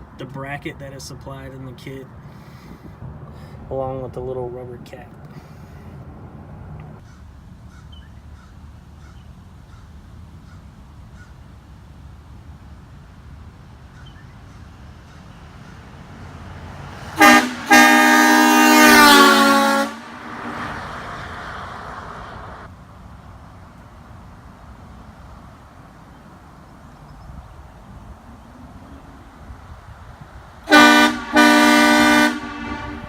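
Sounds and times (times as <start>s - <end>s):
air horn blasts: 17.1s - 20.7s, 30.6s - 33.0s.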